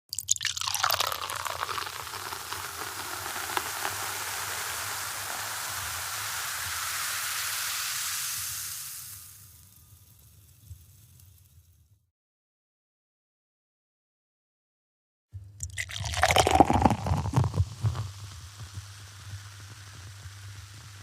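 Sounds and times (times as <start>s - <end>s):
carbonated drink fizzing: 0.1s - 9.7s, 15.6s - 21.0s
faint bubble pops: 15.6s - 18.1s.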